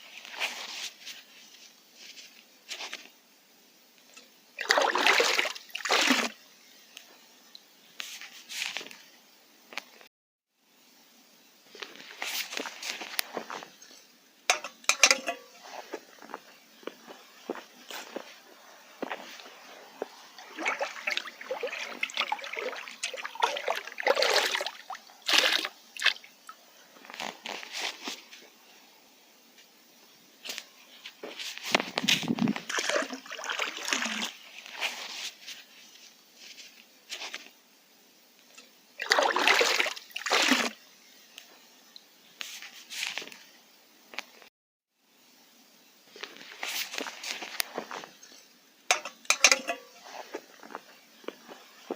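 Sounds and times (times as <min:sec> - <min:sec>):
pot splashing into water: 0:04.6 - 0:06.4, 0:14.5 - 0:15.6, 0:20.4 - 0:26.3, 0:32.5 - 0:34.4, 0:39.0 - 0:40.8, 0:48.9 - 0:50.0
soft scuffs: 0:15.6 - 0:20.2.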